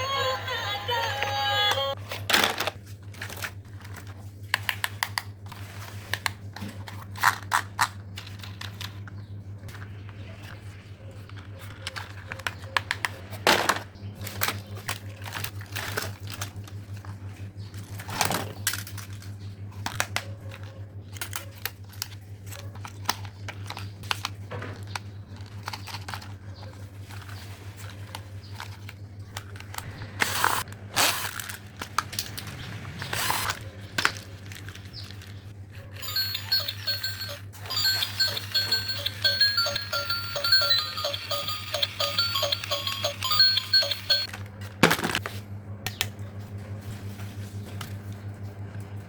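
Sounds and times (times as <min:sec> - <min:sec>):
toys clicking and clattering: 0:11.2 - 0:17.1, 0:17.8 - 0:30.4, 0:31.2 - 0:44.4.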